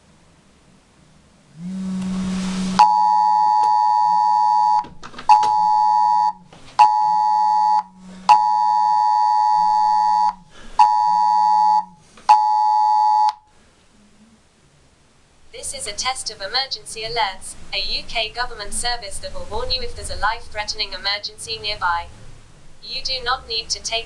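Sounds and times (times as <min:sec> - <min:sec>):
phone vibration buzzing: 0:01.5 - 0:13.4
smartphone emergency alert tone: 0:02.7 - 0:13.4.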